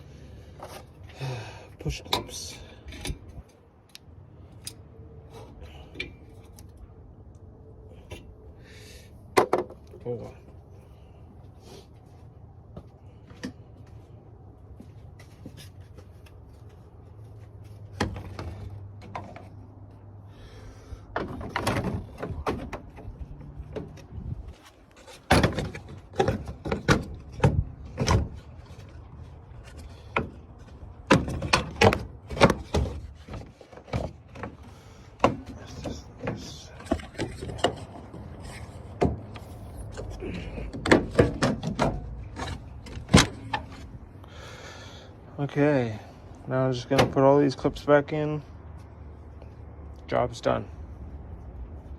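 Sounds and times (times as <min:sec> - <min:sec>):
tools and parts clunking: 0:01.8 - 0:06.9, 0:09.2 - 0:10.6, 0:14.7 - 0:20.1, 0:21.0 - 0:44.4, 0:46.8 - 0:47.5.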